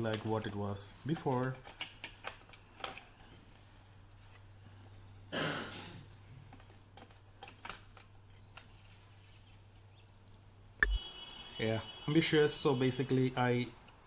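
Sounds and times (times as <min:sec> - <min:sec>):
small clicks and taps of handling: 0:01.2 - 0:03.1, 0:06.5 - 0:08.8
steady low hum: 0:10.5 - 0:11.2.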